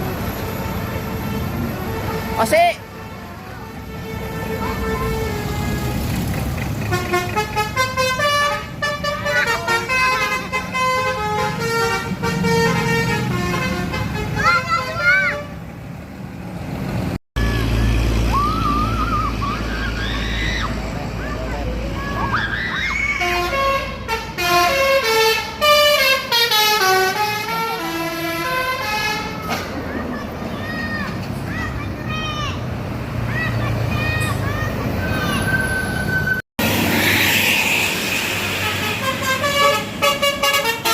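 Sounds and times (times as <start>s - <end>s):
bus horn playing melody: 0.0s - 15.6s, 23.2s - 29.6s, 38.3s - 40.9s
bus engine rumble: 0.0s - 40.9s.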